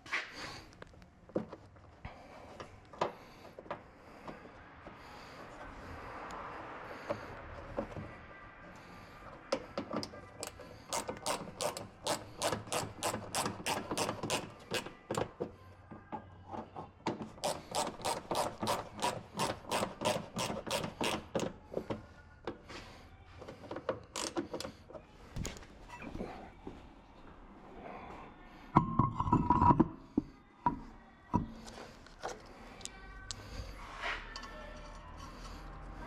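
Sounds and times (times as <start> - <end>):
ratchet wrench clicking: 10.4 - 14.9, 17.4 - 21.4, 24.2 - 24.4.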